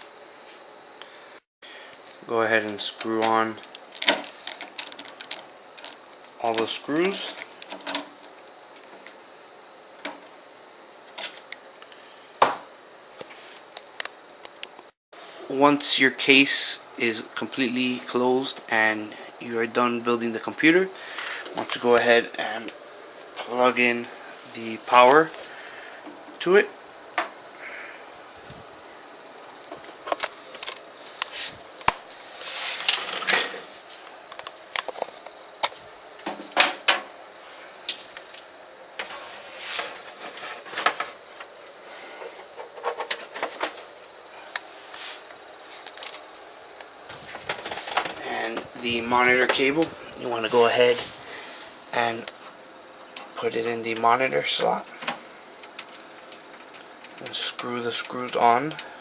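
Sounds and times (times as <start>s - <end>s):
rustling scrape of cable: 29.9s - 34.1s, 39.0s - 41.2s.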